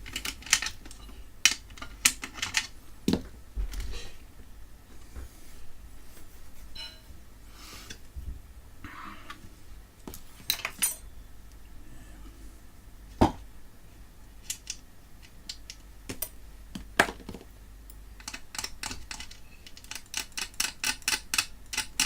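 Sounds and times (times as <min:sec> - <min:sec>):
small metal parts clicking: 0:00.0 - 0:02.7, 0:10.5 - 0:11.0, 0:14.4 - 0:16.3, 0:17.9 - 0:22.0.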